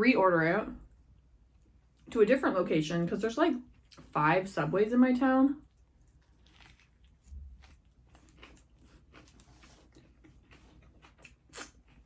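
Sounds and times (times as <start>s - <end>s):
wet chewing with mouth clicks: 3.7s - 4.2s, 5.6s - 12.0s.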